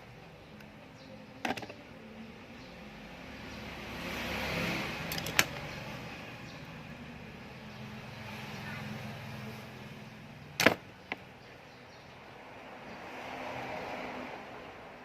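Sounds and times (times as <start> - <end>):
sharp clicks of small parts: 5.1 - 5.7, 10.6 - 11.2.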